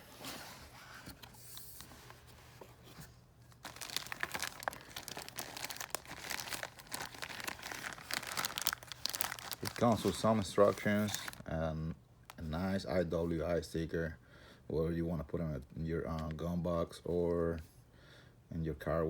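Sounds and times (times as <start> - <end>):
paper rustling and crinkling: 0.0 - 11.5.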